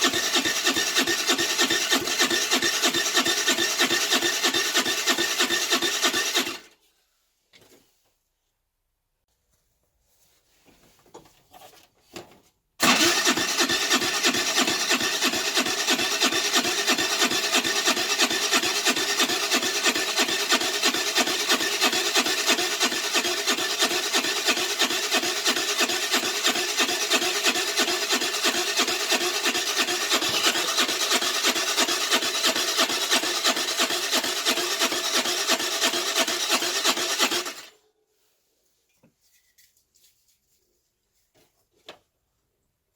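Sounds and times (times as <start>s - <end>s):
scooter electric starter cranking: 0.0s - 6.8s, 12.8s - 37.8s.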